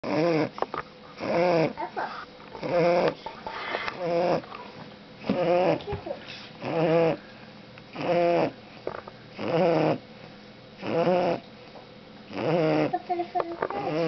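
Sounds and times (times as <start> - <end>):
puppy snoring: 0.0 - 0.6, 1.2 - 4.5, 5.2 - 7.2, 7.9 - 10.0, 10.8 - 11.5, 12.3 - 14.0.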